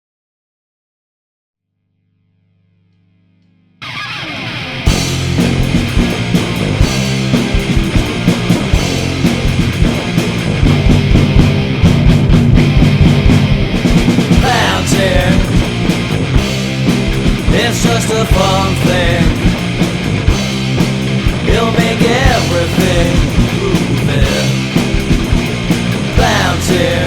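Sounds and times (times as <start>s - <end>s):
rock and roll band music: 3.8s - 27.0s.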